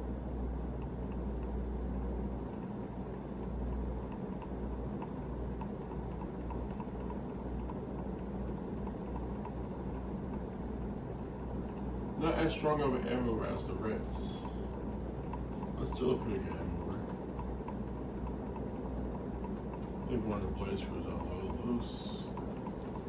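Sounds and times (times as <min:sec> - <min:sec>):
ceiling fan motor humming: 0:00.0 - 0:23.0
faint ticking: 0:00.5 - 0:23.0.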